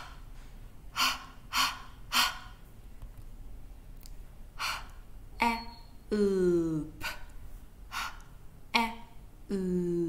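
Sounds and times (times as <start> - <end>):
person sounding breathy h puffs: 0.0 - 2.6.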